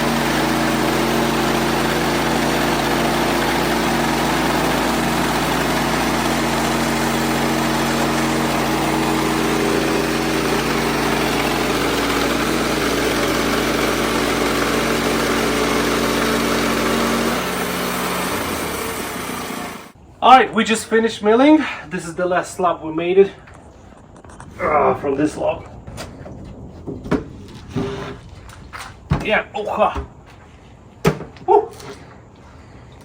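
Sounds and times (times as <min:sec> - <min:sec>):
band blade sawing log: 0:00.0 - 0:20.0
sawmill engine running: 0:00.0 - 0:20.6.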